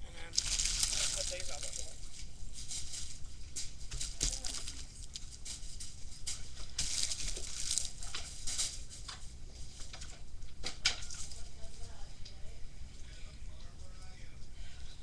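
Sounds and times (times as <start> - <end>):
packaging rustling and crinkling: 0.3 - 10.2.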